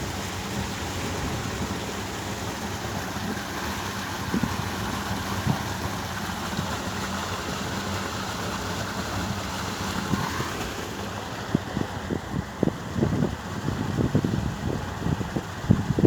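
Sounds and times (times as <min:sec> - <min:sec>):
wind on phone microphone: 0:11.2 - 0:16.0.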